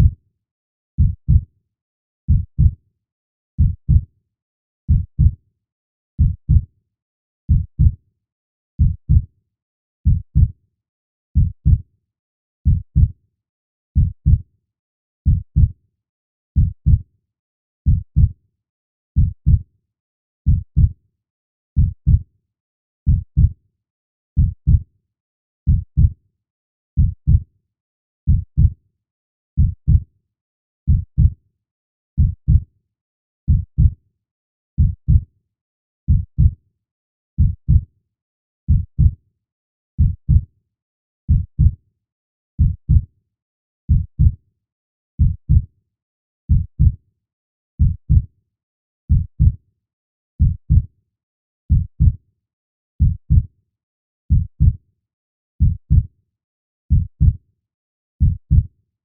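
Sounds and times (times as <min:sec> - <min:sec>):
heartbeat thumps: 0:27.0 - 0:27.4, 0:45.2 - 0:45.6, 0:46.5 - 0:46.9.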